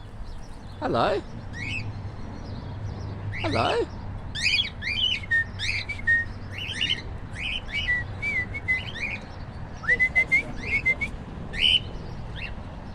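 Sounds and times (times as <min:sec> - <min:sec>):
cockatiels chirping and whistling: 0:04.4 - 0:09.2, 0:09.9 - 0:12.5.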